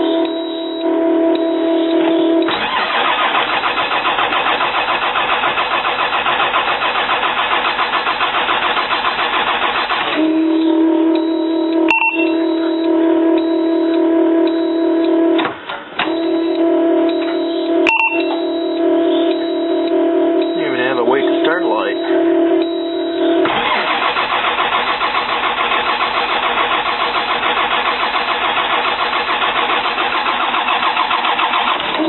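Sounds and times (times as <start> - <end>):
beeps: 0.0 - 2.6, 11.2 - 15.2, 16.0 - 23.5
diesel engine cranking: 0.0 - 32.0
steady humming tone: 16.1 - 23.5.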